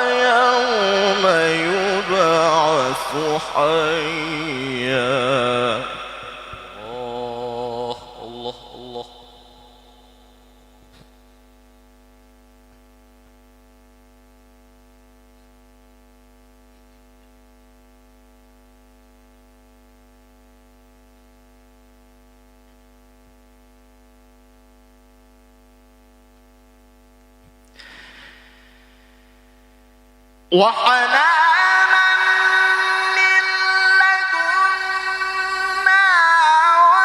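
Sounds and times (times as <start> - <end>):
faint noise: 0.0 - 11.4, 26.2 - 36.2
electrical mains hum: 0.0 - 37.0.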